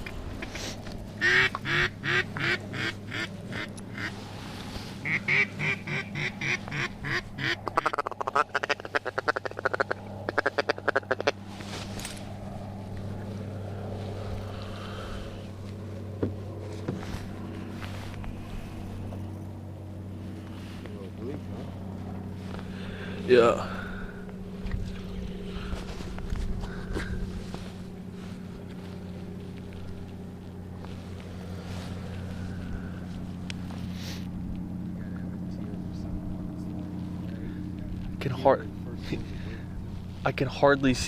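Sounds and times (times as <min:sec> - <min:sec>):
steady low hum: 0:00.0 - 0:41.0
duck clucks: 0:01.2 - 0:04.1, 0:05.0 - 0:11.4
duck quacking loudly: 0:01.2 - 0:04.1, 0:05.0 - 0:11.4.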